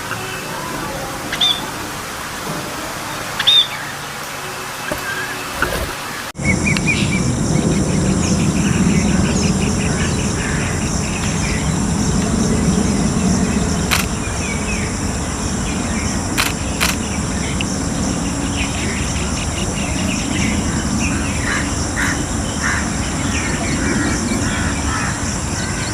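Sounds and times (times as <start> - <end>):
birds chirping and trilling: 0.0 - 25.9
insect drone: 0.0 - 25.9
low rumble: 6.4 - 25.6
sharp clicks: 13.9 - 14.2, 16.4 - 17.1.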